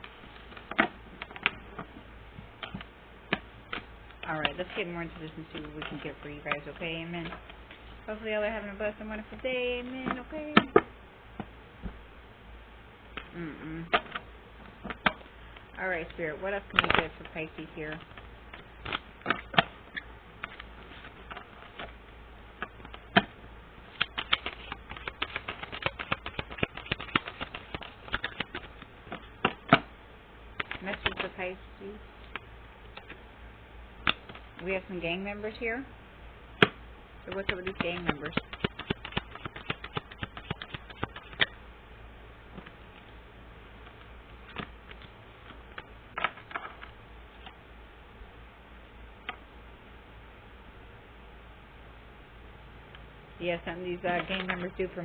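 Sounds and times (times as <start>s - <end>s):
tarot cards shuffling: 23.9s - 29.8s, 30.6s - 31.4s, 37.3s - 41.6s.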